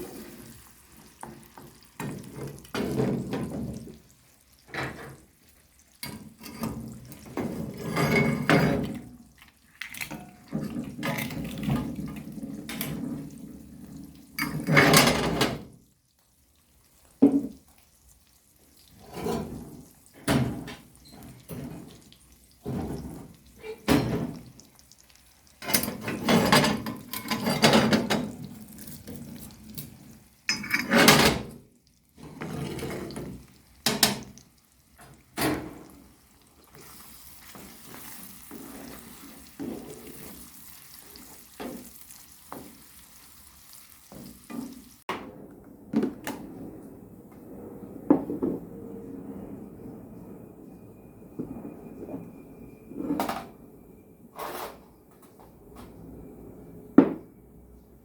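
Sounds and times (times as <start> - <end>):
water running from a tap: 0.0 - 45.0
dishes and utensils clinking: 6.0 - 13.0, 14.3 - 15.7, 25.6 - 29.9, 30.5 - 31.6.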